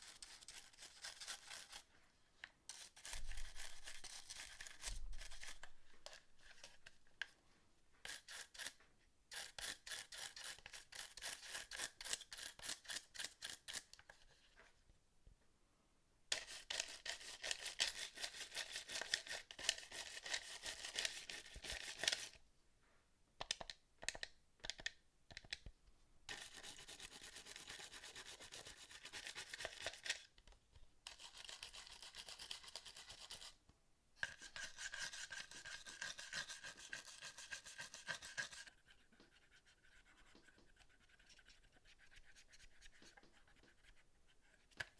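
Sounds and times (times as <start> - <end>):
brush scrubbing plastic: 34.2 - 43.8.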